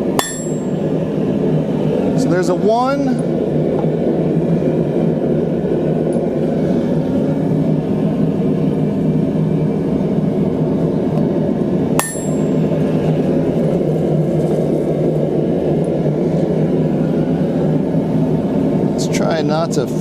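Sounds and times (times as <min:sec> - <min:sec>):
hammer blow on steel: 0:00.0 - 0:00.9, 0:12.0 - 0:12.7
loud steady low noise: 0:00.0 - 0:20.0.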